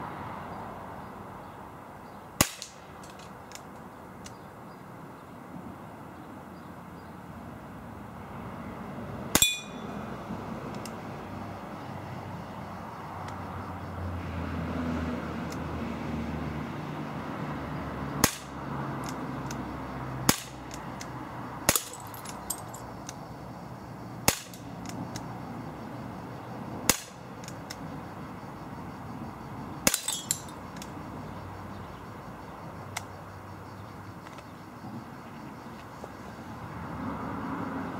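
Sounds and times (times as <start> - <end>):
air pistol shots: 2.4 - 2.9, 18.2 - 18.5, 24.3 - 24.6, 26.9 - 27.2
small clicks and clinks: 3.0 - 4.4, 21.7 - 23.2, 29.9 - 30.9.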